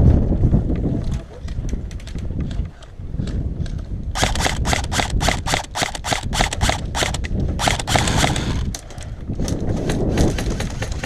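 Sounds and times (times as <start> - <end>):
airsoft gun rapid fire: 4.2 - 8.8.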